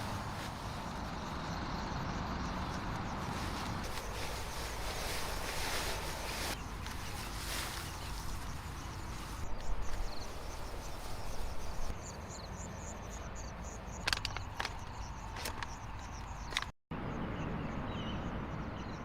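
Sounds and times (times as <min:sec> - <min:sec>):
insect chirping: 0:00.0 - 0:16.7
sharp clicks: 0:14.0 - 0:16.7.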